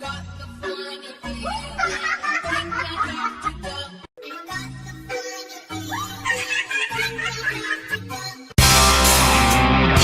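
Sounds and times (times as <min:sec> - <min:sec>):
distorted rock music with guitar: 0:08.6 - 0:10.0.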